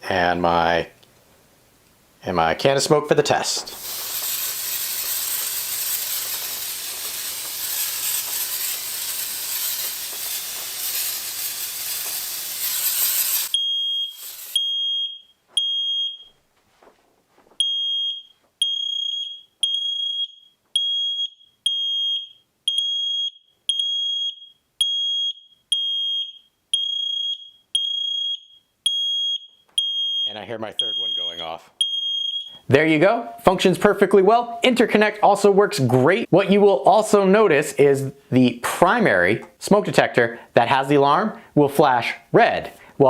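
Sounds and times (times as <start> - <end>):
aerosol can hissing: 3.6 - 14.6
smoke alarm high beeps: 3.8 - 16.4, 17.6 - 32.6.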